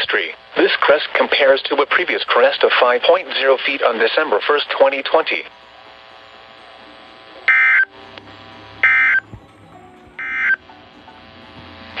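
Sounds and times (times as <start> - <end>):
warbling digital data tones: 4.4 - 9.3, 10.2 - 11.4.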